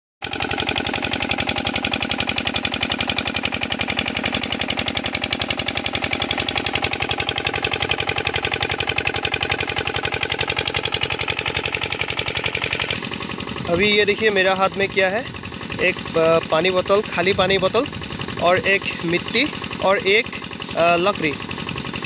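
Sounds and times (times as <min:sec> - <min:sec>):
water pump engine running: 0:00.2 - 0:22.0.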